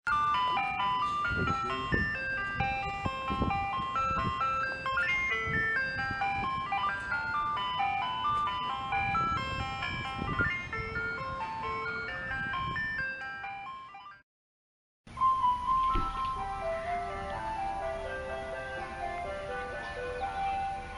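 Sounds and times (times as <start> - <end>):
ice cream truck chime melody: 0.1 - 14.2, 15.1 - 20.9
low rumbling engine noise: 15.1 - 20.9.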